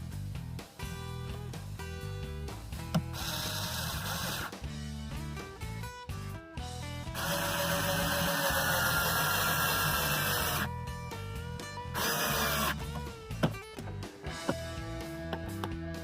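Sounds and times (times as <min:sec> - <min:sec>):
background music: 0:00.0 - 0:16.0
power drill driving screws: 0:03.0 - 0:04.6, 0:07.2 - 0:10.7, 0:12.0 - 0:12.9.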